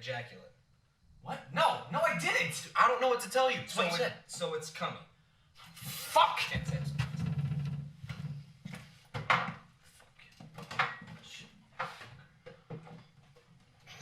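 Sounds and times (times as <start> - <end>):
household items knocking: 6.5 - 9.7.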